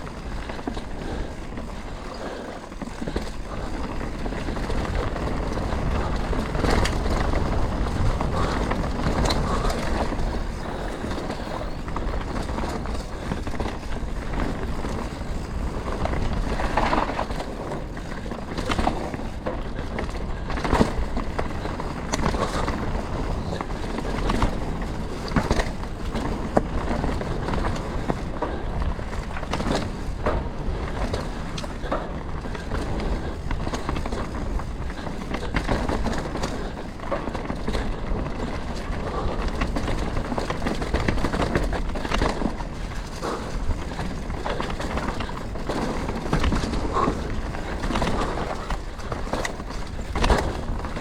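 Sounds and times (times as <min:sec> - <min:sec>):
bike knocks and rattles: 0:00.0 - 0:51.0
bike tyre noise on dirt: 0:00.0 - 0:51.0.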